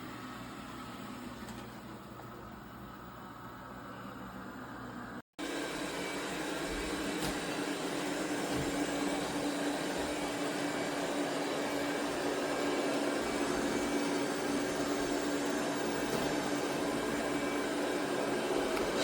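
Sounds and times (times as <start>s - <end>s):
robot vacuum whirring hum: 5.4s - 19.0s.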